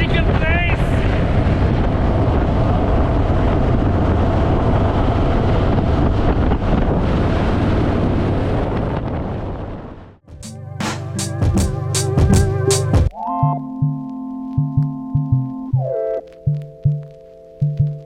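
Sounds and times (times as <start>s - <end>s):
wind rush over microphone: 0.0s - 10.2s.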